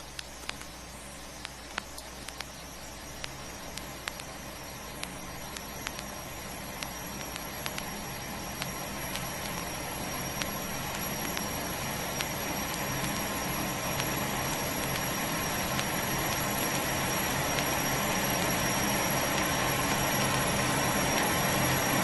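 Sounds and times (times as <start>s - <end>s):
vinyl surface noise clicks: 0.0s - 0.8s, 1.4s - 4.4s.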